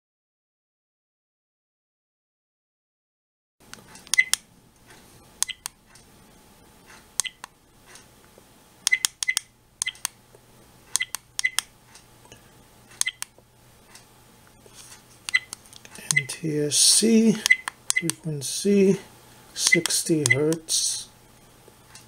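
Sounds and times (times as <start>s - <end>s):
buttons clicking: 3.7s - 4.4s, 5.4s - 5.8s, 7.2s - 7.5s, 8.8s - 10.2s, 10.9s - 11.7s, 13.0s - 13.3s, 15.3s - 16.3s, 17.4s - 18.2s, 19.6s - 20.6s.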